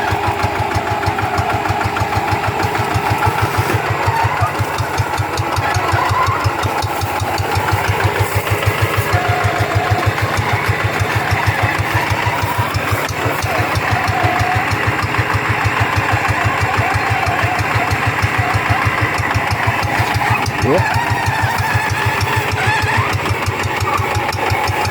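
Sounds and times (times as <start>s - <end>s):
diesel engine chugging: 0.0s - 24.9s.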